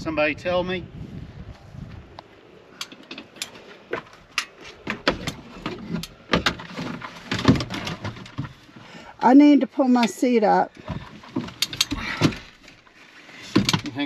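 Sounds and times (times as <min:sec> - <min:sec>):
metallic clicks and rattles of bike: 0:02.7 - 0:08.6, 0:10.8 - 0:14.0.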